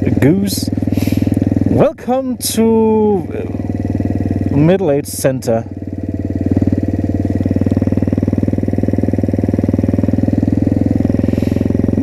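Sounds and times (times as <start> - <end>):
small engine puttering: 0.0 - 12.0.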